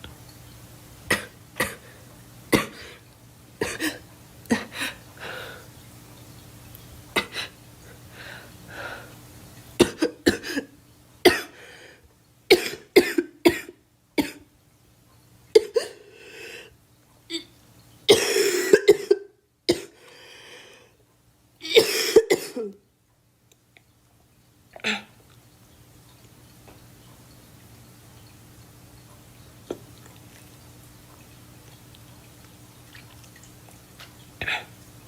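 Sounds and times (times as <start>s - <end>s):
girl coughing: 2.5s - 2.9s, 3.6s - 4.7s, 9.8s - 10.7s, 11.3s - 11.6s, 12.5s - 14.4s, 15.6s - 16.0s, 18.1s - 20.0s, 21.6s - 22.8s.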